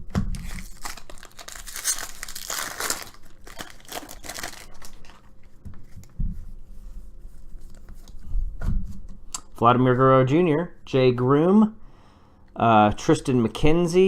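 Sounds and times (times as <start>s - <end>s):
foil wrapper tearing and crinkling: 0.3s - 5.3s.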